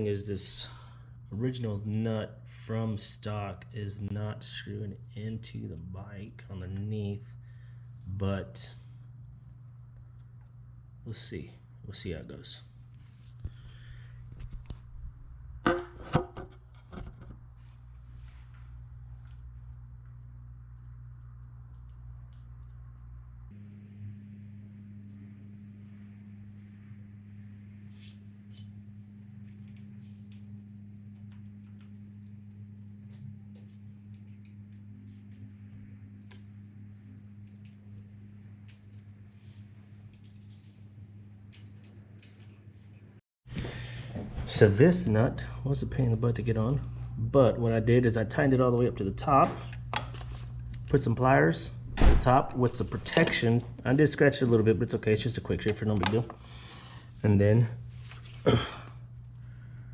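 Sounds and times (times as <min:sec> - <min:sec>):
steady low hum: 0:00.0 - 0:59.9
hand tools clinking: 0:40.1 - 0:40.8, 0:41.5 - 0:43.0.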